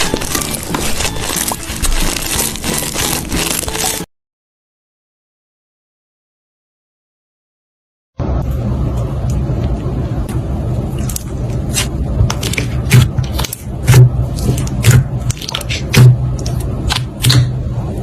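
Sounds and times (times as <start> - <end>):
slime crackling and popping: 0.0 - 4.1, 11.0 - 17.5.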